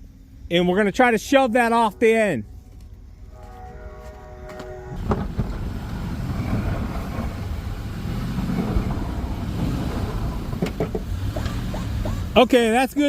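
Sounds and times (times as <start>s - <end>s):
truck engine rumbling under load: 4.6s - 13.0s.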